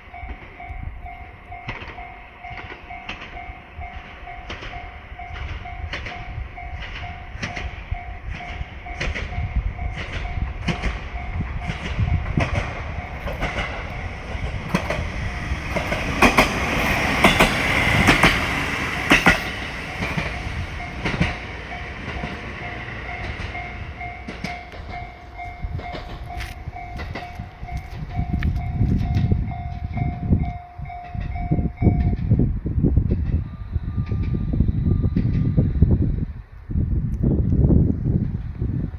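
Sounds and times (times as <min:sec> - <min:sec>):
diesel train passing: 0:00.0 - 0:38.9
wheels clacking over rail joints: 0:01.5 - 0:29.3.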